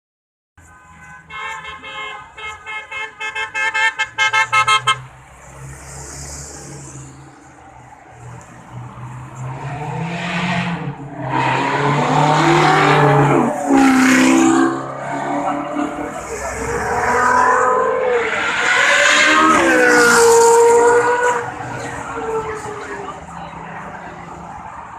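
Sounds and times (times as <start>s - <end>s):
car horn honking: 0.6s - 5.1s
car engines revving: 4.1s - 24.9s.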